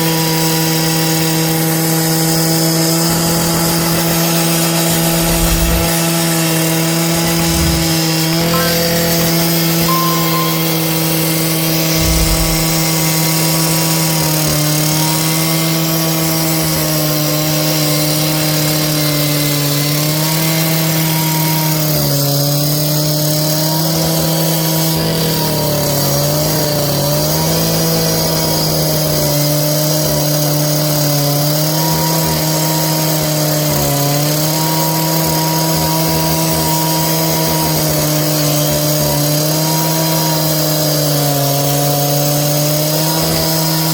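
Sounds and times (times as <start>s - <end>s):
small engine running at high speed: 15.0s - 43.9s.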